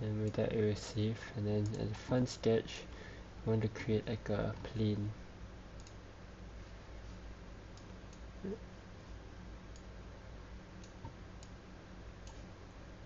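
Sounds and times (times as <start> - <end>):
steady low hum: 0.0 - 13.0
computer mouse clicks: 5.8 - 6.0.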